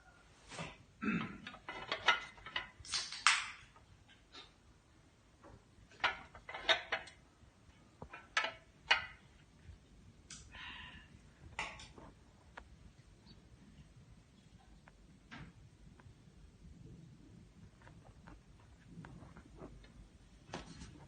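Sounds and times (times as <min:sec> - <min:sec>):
hard objects knocking and clattering: 0:01.3 - 0:03.8, 0:05.4 - 0:07.2, 0:07.9 - 0:09.6.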